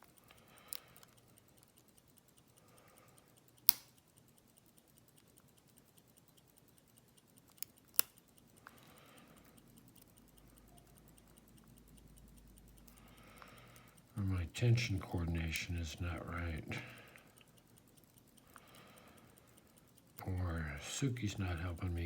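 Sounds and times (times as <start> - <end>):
lock pick clicking in padlock: 3.6 - 4.0.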